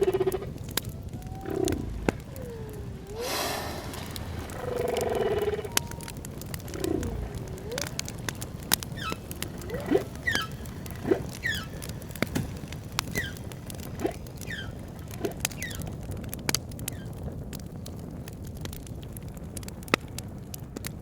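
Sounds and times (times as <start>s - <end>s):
squeaky whale calls: 0.0s - 8.2s, 8.8s - 12.1s, 13.1s - 13.5s, 14.4s - 16.0s
low underwater rumble: 0.0s - 12.1s
campfire crackling and popping: 0.0s - 21.0s.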